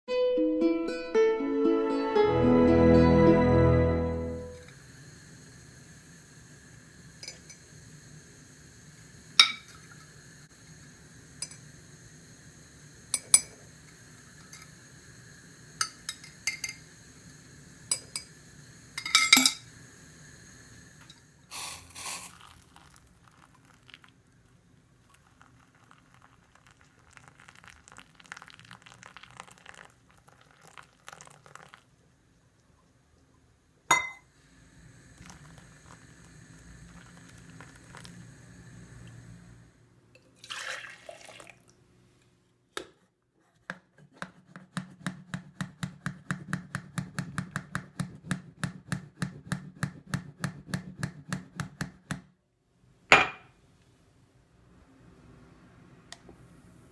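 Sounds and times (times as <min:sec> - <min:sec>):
glass dishes clinking: 0:09.4 - 0:09.7, 0:19.0 - 0:19.6, 0:33.9 - 0:34.2, 0:53.1 - 0:53.5.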